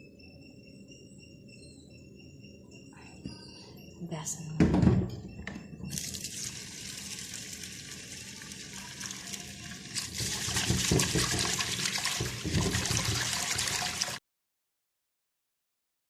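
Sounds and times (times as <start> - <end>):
tap water running: 5.9 - 14.2.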